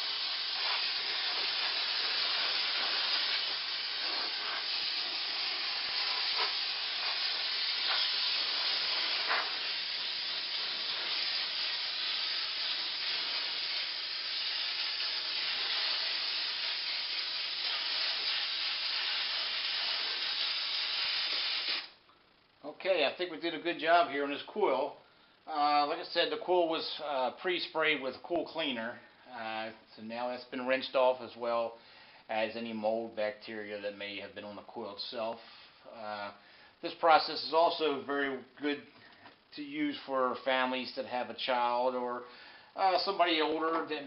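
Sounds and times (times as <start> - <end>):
steam cleaner hissing: 0.0 - 22.0.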